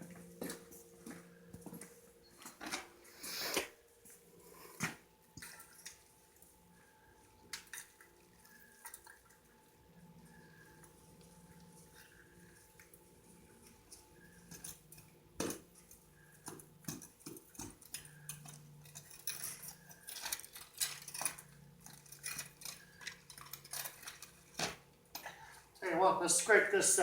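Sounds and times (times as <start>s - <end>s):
metal tools clinking and scraping: 16.9s - 25.5s.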